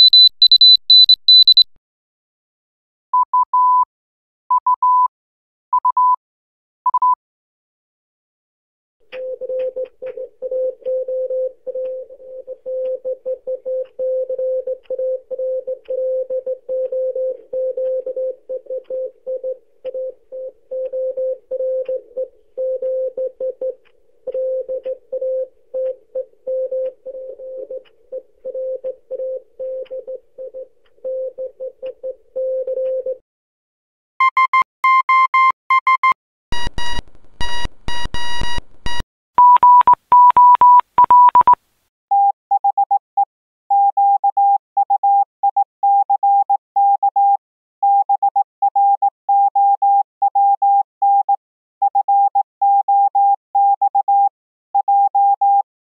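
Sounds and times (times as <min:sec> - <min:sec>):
morse code beeping: 0:00.0 - 0:01.7, 0:09.2 - 0:33.2, 0:34.2 - 0:43.0
clicks: 0:09.1 - 0:33.2.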